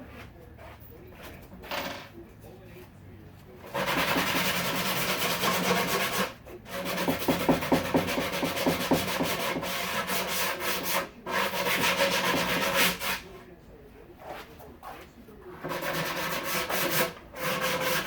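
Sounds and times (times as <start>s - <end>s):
wood being sanded: 3.7s - 13.3s, 15.6s - 18.0s.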